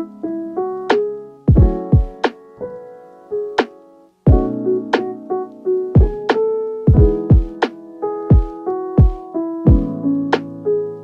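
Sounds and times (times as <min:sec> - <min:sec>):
keyboard melody over a beat: 0:00.0 - 0:11.0
deep kick drum: 0:01.5 - 0:02.2, 0:04.3 - 0:04.5, 0:06.9 - 0:07.6, 0:08.3 - 0:09.9.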